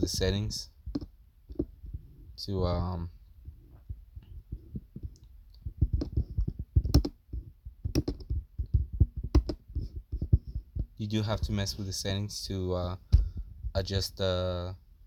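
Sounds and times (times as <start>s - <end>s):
fingers tapping device controls: 4.2s - 11.0s.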